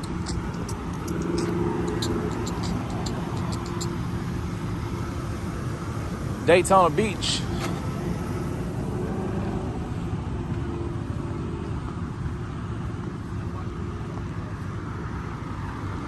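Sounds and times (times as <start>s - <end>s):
cars passing by: 0.0s - 16.0s.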